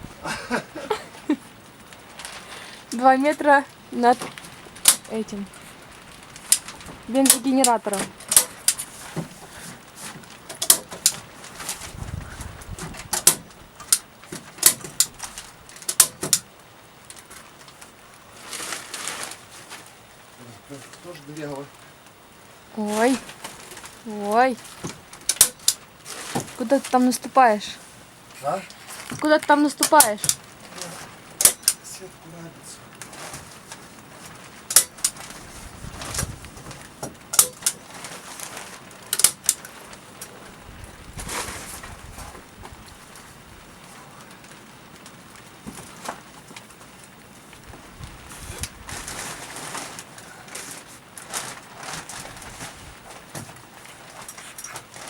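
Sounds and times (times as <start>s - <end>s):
sharp clicks and knocks: 10.5s - 11.2s, 12.7s - 16.5s, 24.8s - 25.8s, 34.7s - 35.2s, 39.1s - 40.3s
sharp clicks or knocks: 34.7s - 35.2s.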